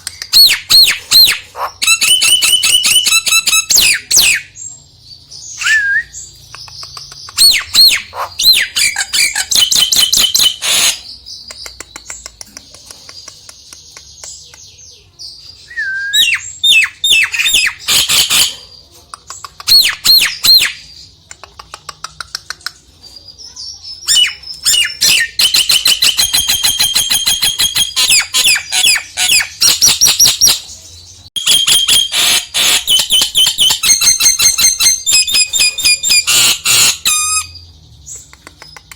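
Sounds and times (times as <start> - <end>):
bird rapid chattering notes: 6.4 - 14.8, 16.9 - 30.7, 31.4 - 38.9.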